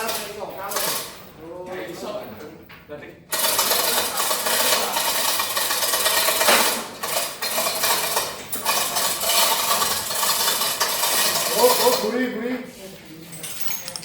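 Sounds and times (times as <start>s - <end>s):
ice clattering and clinking: 13.3s - 14.0s.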